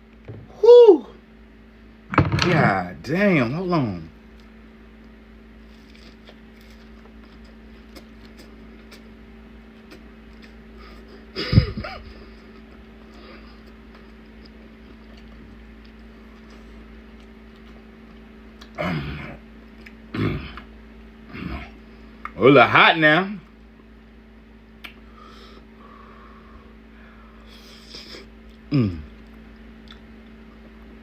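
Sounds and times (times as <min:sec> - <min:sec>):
steady low hum: 0:00.0 - 0:31.0
man chewing food: 0:04.3 - 0:20.9, 0:24.7 - 0:31.0
man humming mm: 0:18.6 - 0:19.4, 0:20.1 - 0:20.7, 0:27.3 - 0:29.4.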